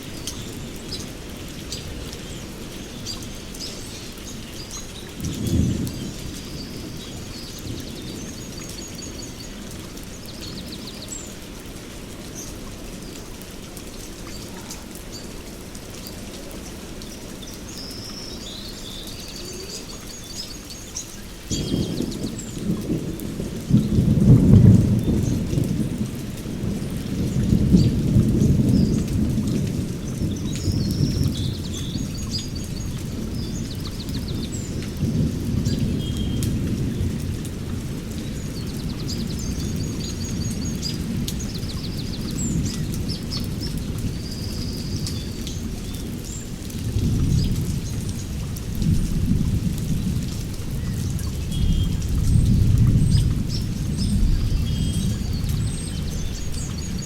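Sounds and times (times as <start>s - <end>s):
heavy rain: 0.0s - 57.0s
thunder rumbling: 5.0s - 9.4s, 21.4s - 57.0s.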